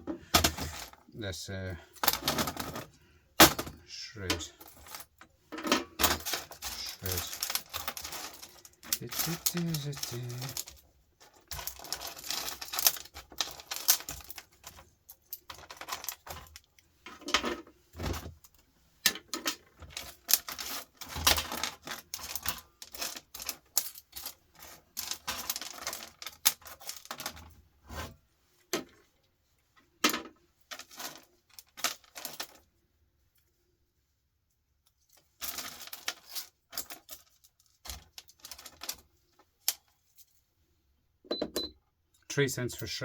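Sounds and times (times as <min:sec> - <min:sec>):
scrap metal clinking and rattling: 0:00.0 - 0:01.0, 0:01.8 - 0:28.1, 0:30.0 - 0:32.7, 0:35.0 - 0:40.4.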